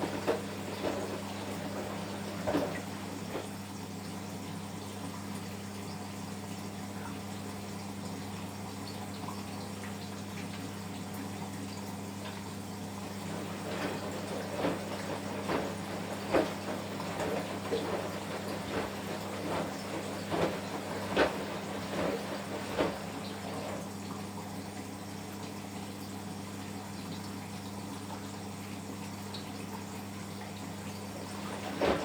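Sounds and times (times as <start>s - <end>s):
water sloshing and splashing: 0.0s - 3.9s, 13.0s - 24.4s, 30.6s - 32.0s
washing machine humming: 0.0s - 32.0s.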